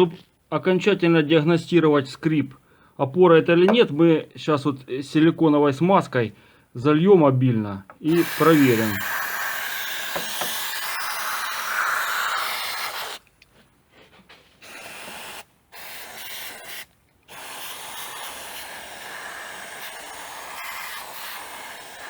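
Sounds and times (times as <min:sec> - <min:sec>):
aerosol can spraying hiss: 0:08.1 - 0:13.3, 0:14.6 - 0:22.0.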